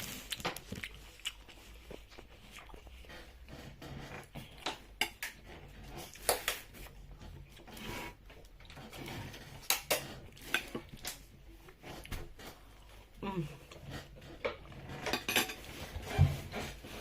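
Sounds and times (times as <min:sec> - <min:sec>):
cutlery clinking on dishes: 0:15.1 - 0:15.7.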